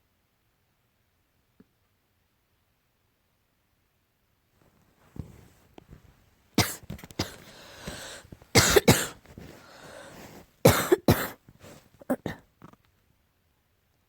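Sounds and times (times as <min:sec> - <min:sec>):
person coughing harshly: 0:06.6 - 0:12.4
rasping breath: 0:06.6 - 0:12.4.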